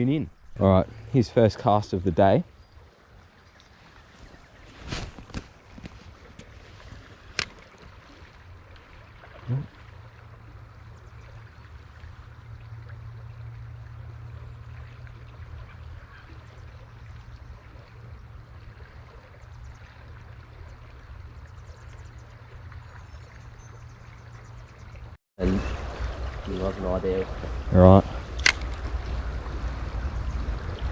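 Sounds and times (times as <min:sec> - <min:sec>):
creek trickling: 0:00.0 - 0:30.9
sharp click: 0:28.3 - 0:28.8
lure plopping into water: 0:28.3 - 0:28.9.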